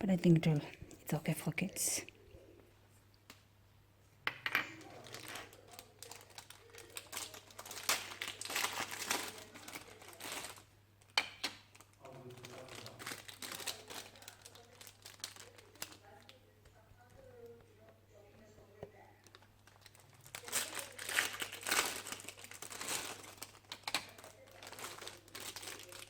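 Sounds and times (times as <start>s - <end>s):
plastic packaging crinkling: 4.8s - 16.4s, 19.2s - 26.0s.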